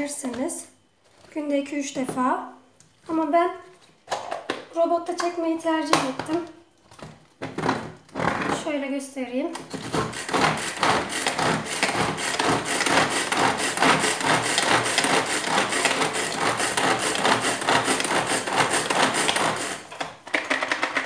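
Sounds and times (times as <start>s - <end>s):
food chopper clattering: 9.8s - 21.0s.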